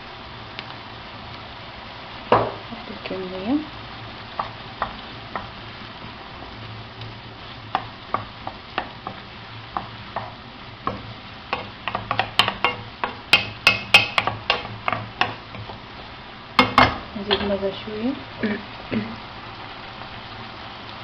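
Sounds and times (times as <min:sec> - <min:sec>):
vegetables sizzling in a pan: 0:00.0 - 0:21.0
utensil tapping against a pan: 0:04.3 - 0:05.6, 0:07.7 - 0:15.8.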